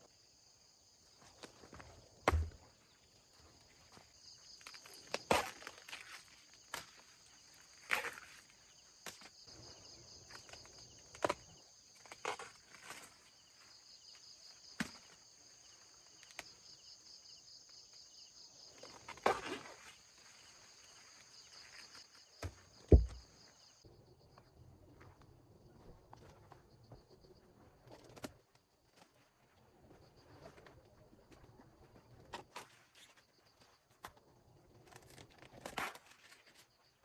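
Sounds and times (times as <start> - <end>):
insects chirring: 0.0 - 24.6, 25.5 - 37.0
footsteps through garden plants: 1.1 - 9.6, 18.8 - 23.4
heavy thump: 22.9 - 23.3.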